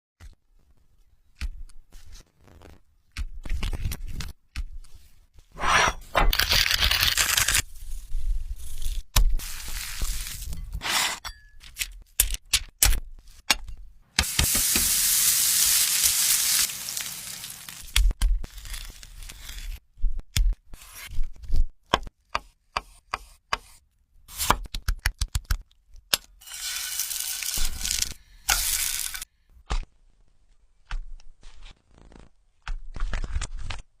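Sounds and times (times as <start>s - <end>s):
food sizzling: 14.2s - 18.1s, 26.4s - 29.3s.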